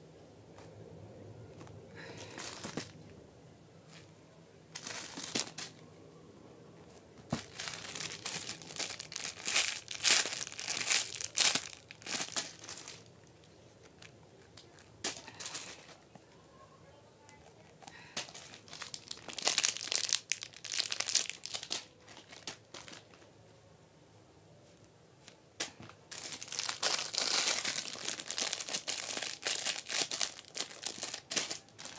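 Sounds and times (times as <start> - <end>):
packaging crinkling: 2.0 - 3.0, 4.8 - 5.8, 7.3 - 13.1, 17.9 - 23.2, 26.1 - 31.9.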